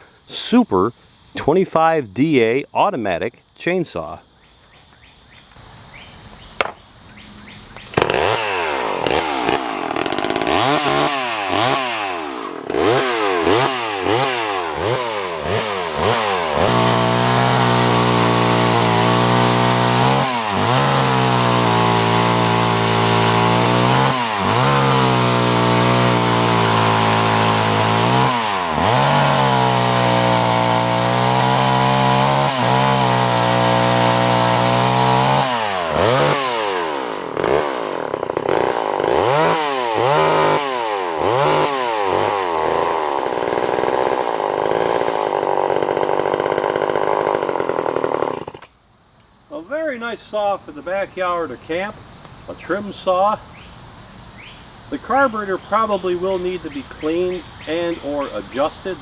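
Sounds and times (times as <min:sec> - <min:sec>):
chainsaw engine revving: 0:07.5 - 0:48.7, 0:55.0 - 0:59.0.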